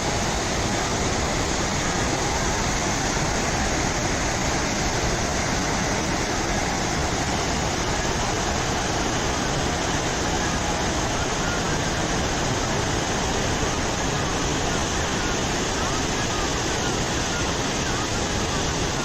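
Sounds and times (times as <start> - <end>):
waterfall pouring: 0.0 - 19.0.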